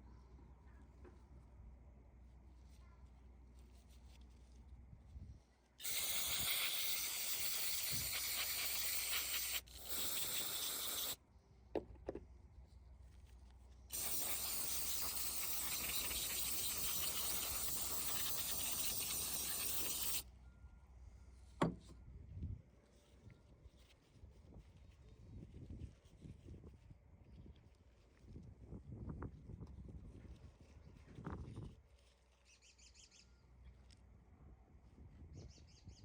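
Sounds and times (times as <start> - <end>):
aerosol spray hissing: 5.8 - 11.2, 13.9 - 20.2.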